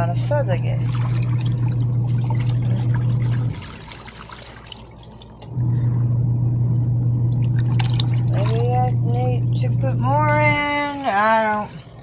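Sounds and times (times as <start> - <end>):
water sloshing and splashing: 0.0 - 5.6, 7.2 - 12.0
washing machine motor humming: 0.0 - 12.0.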